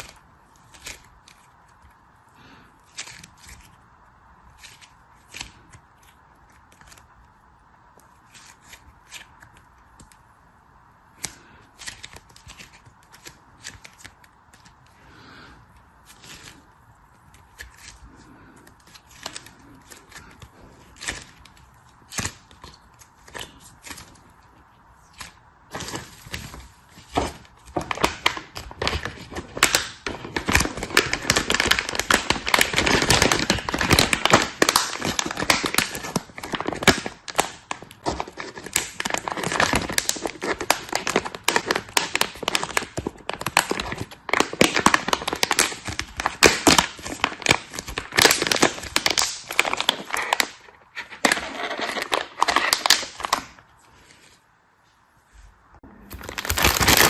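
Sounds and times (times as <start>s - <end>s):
plastic packaging crinkling: 11.2s - 53.6s, 56.1s - 57.0s
packaging clicks: 56.1s - 57.0s.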